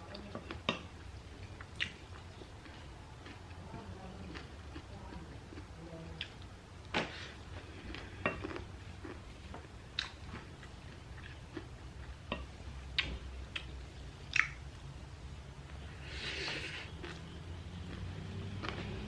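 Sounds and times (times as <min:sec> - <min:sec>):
quiet chewing of crunchy snack: 0:00.1 - 0:14.6, 0:15.7 - 0:19.0.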